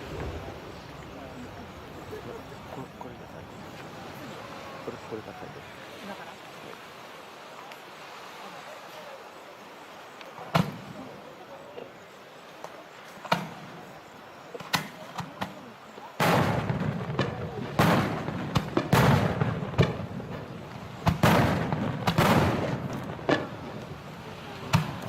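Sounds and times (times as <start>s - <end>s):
fireworks crackling: 0.0s - 25.0s
fireworks bangs: 10.4s - 11.2s, 13.1s - 13.9s, 14.5s - 25.0s.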